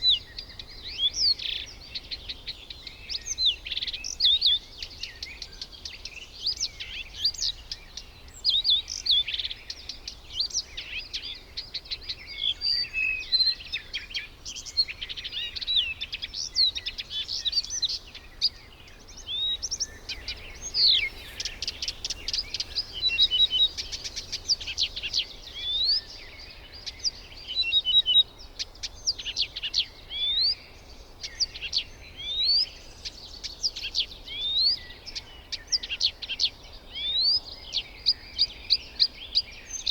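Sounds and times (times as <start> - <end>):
birds chirping and calling: 16.4 - 30.6.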